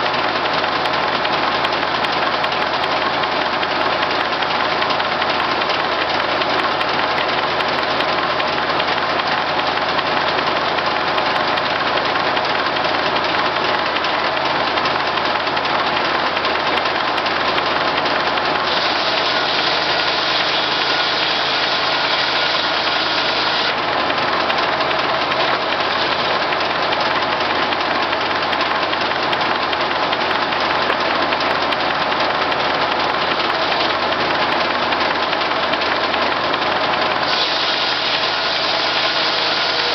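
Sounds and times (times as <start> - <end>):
engine driving circular saw: 0.0 - 39.9.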